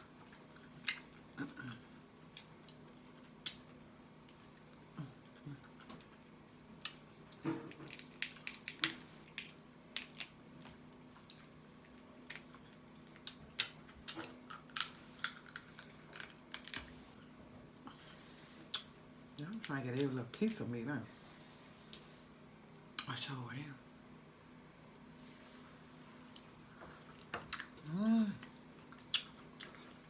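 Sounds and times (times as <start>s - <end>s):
chewing and smacking: 0.0s - 17.0s, 28.7s - 30.0s
faint steady hum: 0.0s - 30.0s.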